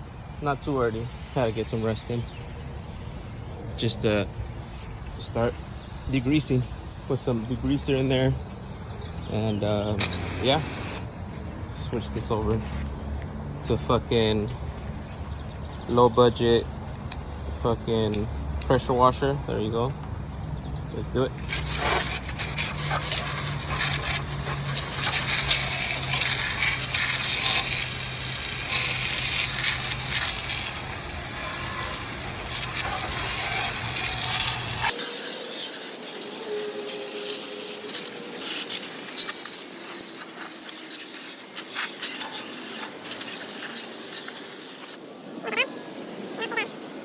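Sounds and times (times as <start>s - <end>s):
pressure washer spraying water: 0.4s - 8.8s, 10.0s - 11.1s, 21.4s - 45.0s.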